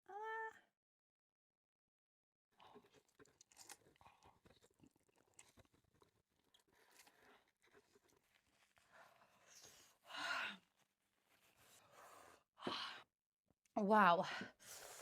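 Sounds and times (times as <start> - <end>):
crackly chewing and mouth noises: 2.6 - 10.0.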